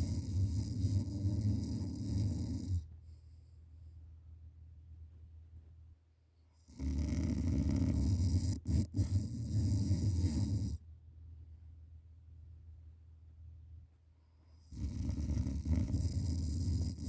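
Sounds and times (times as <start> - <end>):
person snoring: 0.0 - 2.8, 6.8 - 10.8, 14.7 - 17.0
faint low hum: 0.0 - 17.0.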